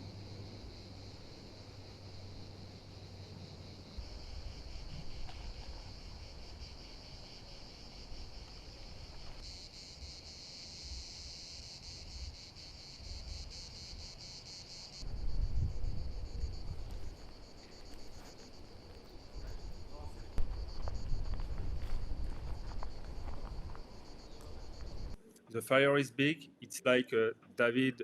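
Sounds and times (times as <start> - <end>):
insects chirring: 0.0 - 25.2
wind rumble on microphone: 15.0 - 17.4, 19.3 - 25.2.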